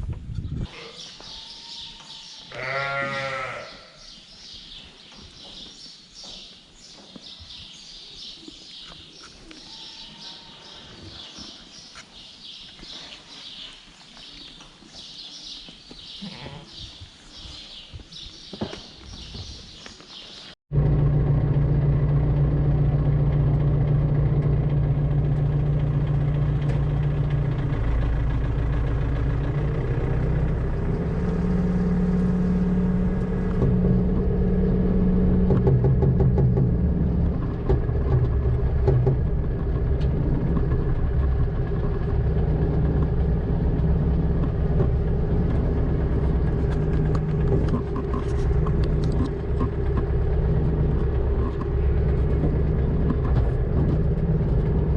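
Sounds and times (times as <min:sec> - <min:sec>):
farm machine engine running: 0:20.7 - 0:54.9.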